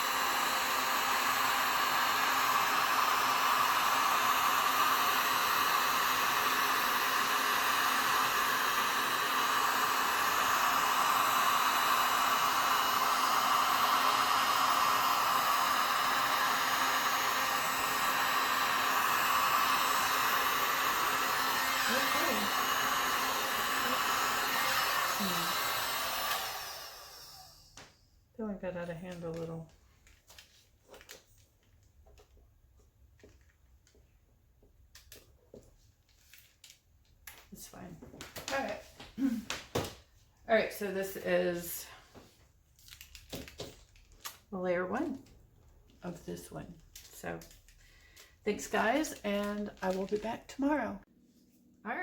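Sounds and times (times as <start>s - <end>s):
hot-air blower running: 0.0s - 28.0s, 38.4s - 40.0s, 48.0s - 50.8s.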